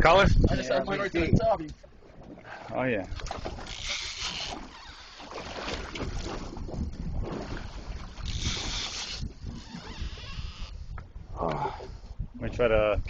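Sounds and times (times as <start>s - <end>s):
wind buffeting microphone: 0.0s - 2.4s, 5.5s - 13.0s
water noise: 0.0s - 13.0s.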